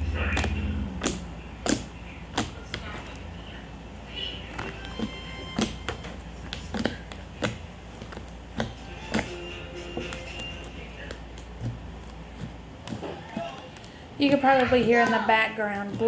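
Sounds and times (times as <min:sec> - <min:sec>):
slime popping and snapping: 0:00.0 - 0:02.9, 0:04.5 - 0:09.3.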